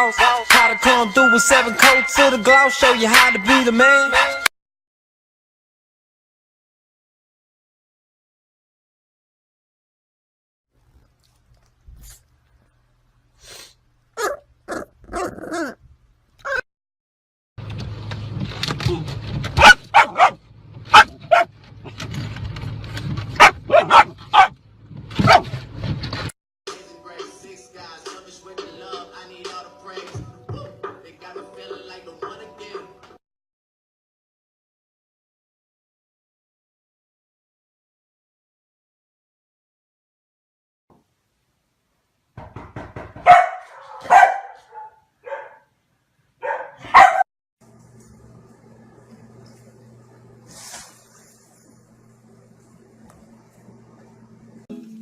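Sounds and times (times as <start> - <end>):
dog barking: 14.2 - 15.8, 19.6 - 21.5, 23.4 - 24.6, 25.2 - 25.6, 43.2 - 45.7, 46.4 - 47.3.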